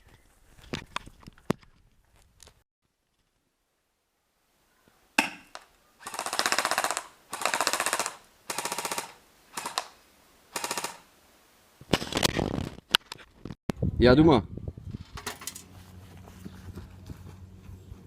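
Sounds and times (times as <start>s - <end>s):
airsoft gun firing bursts: 6.0s - 11.0s.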